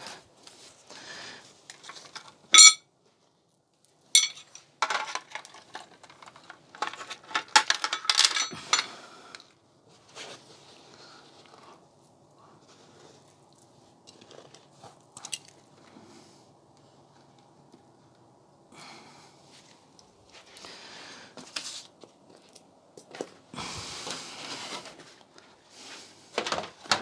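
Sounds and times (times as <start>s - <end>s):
metallic clink: 2.6s - 2.8s, 4.2s - 4.5s
small objects rattling and clattering: 4.2s - 8.9s.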